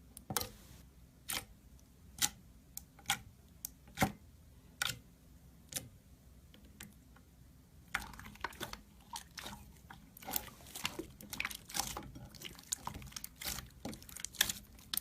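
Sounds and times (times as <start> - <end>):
slime popping and crackling: 10.3 - 15.0.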